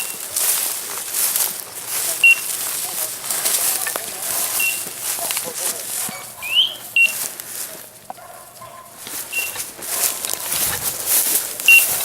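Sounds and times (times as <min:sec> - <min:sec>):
footsteps rustling through brush: 0:00.0 - 0:12.0
short high beep: 0:02.2 - 0:02.5, 0:06.6 - 0:07.2.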